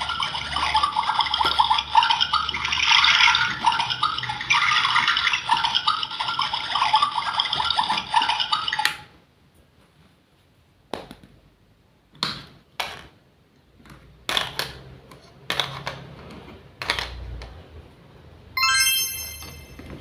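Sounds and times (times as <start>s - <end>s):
small objects clicking and knocking: 13.8s - 16.1s, 16.8s - 17.5s.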